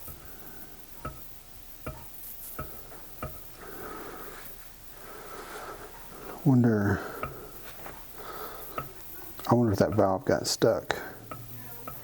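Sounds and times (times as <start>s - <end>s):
soft rustle: 4.2s - 6.5s, 7.4s - 9.6s.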